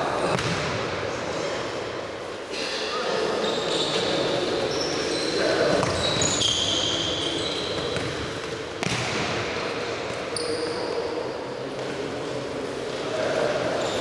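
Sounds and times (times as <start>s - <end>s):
murmur of sports hall: 0.0s - 14.0s
ball impact: 0.2s - 0.8s, 8.0s - 9.4s
shoes squeaking on court: 3.3s - 9.0s, 10.3s - 11.0s.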